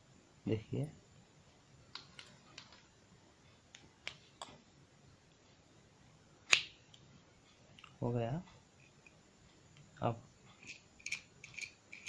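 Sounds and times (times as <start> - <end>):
screwdriver parts clicking: 10.6 - 12.0.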